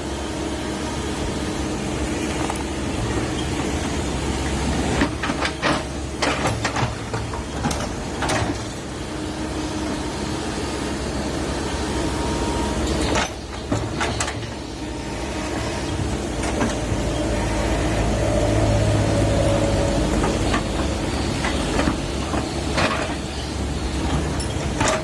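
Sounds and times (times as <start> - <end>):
excavator diesel engine running: 0.0 - 25.0
machine knocks and clanks: 4.9 - 8.8, 20.1 - 25.0.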